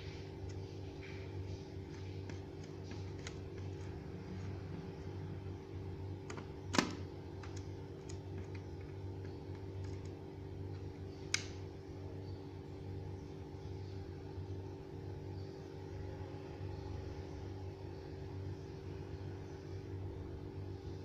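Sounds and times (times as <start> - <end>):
steady low hum: 0.0 - 21.0
laptop parts clicking: 1.8 - 4.5.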